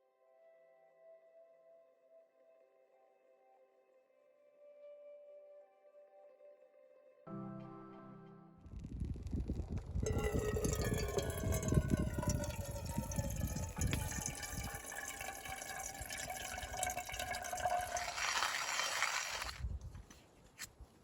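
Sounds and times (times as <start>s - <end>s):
water pouring into container: 10.0s - 19.6s.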